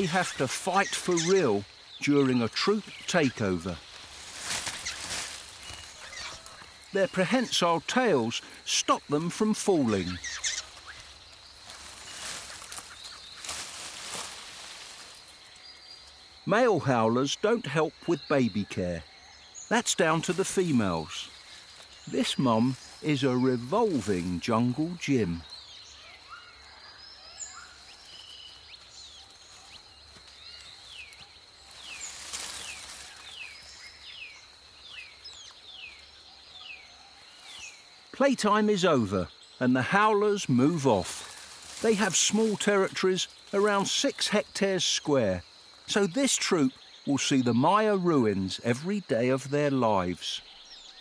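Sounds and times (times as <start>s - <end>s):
faint bird chirps: 0.0s - 44.5s
high insect drone: 0.0s - 51.0s.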